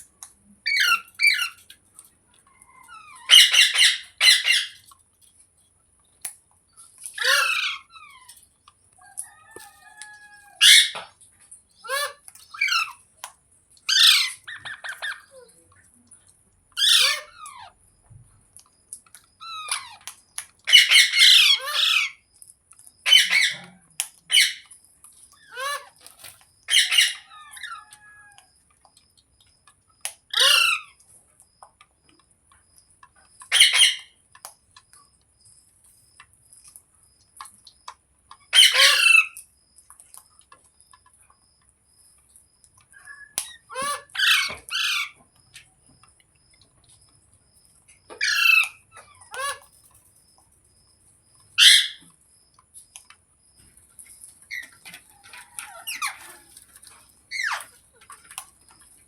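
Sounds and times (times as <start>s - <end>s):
parrot squawking: 0.7s - 1.6s, 2.6s - 4.8s, 7.1s - 8.3s, 9.6s - 11.1s, 11.8s - 13.0s, 13.9s - 15.5s, 16.8s - 17.7s, 20.7s - 22.2s, 23.0s - 24.6s, 25.5s - 26.0s, 26.7s - 28.4s, 30.3s - 31.0s, 33.5s - 34.1s, 38.5s - 39.4s, 43.0s - 45.2s, 48.1s - 49.7s, 51.6s - 52.0s.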